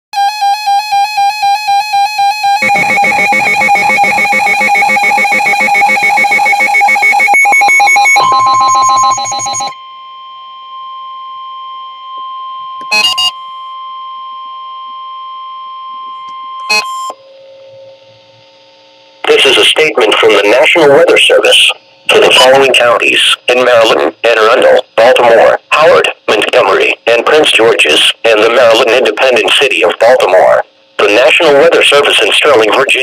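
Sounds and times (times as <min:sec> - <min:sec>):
steady single-pitch alarm tone: 0:00.2 - 0:19.2
warbling buzzy electronic tones: 0:00.8 - 0:09.8
short electronic blips: 0:02.6 - 0:09.8.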